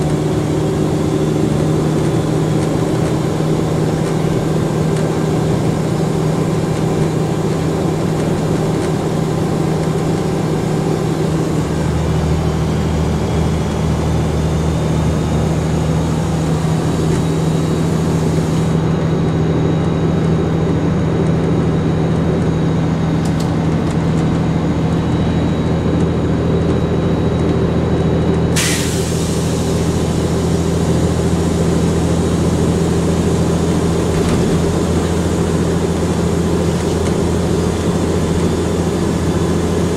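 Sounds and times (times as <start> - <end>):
diesel bus engine running: 0.0 - 39.9
short hiss of air: 28.6 - 29.8.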